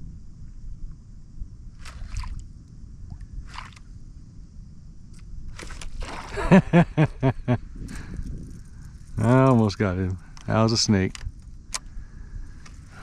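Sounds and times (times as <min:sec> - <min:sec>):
low wind: 0:00.0 - 0:13.0
water rumble: 0:00.0 - 0:13.0
water splashes: 0:01.8 - 0:02.5, 0:03.1 - 0:03.8, 0:05.6 - 0:06.8.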